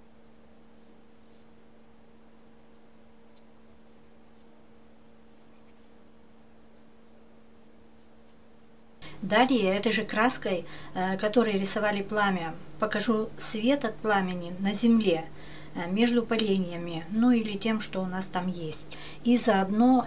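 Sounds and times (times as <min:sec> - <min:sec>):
low electrical hum: 0:00.0 - 0:20.0
paintbrush scratching on paper: 0:00.7 - 0:09.0.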